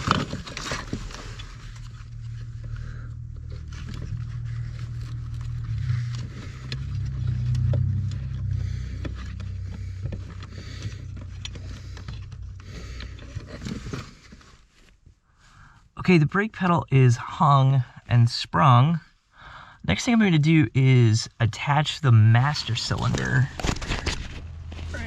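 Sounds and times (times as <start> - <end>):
low hum: 0.0 - 14.5.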